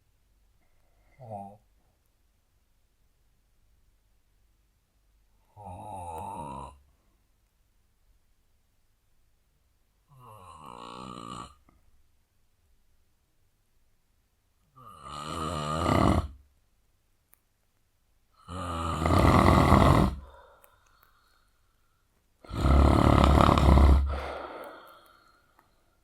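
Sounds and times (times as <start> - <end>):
quiet breaths: 0.0 - 12.2, 18.2 - 26.0
man snoring heavily: 5.6 - 6.8, 10.1 - 11.6, 14.8 - 16.4, 18.4 - 20.5, 22.4 - 25.0.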